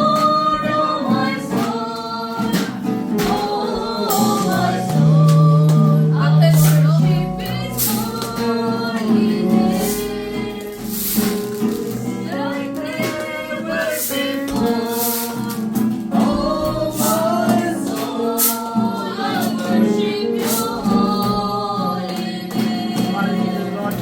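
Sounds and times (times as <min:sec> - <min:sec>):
group singing gospel: 0:00.0 - 0:24.0
instrumental accompaniment: 0:00.0 - 0:24.0
sharp percussion hits: 0:01.6 - 0:18.8.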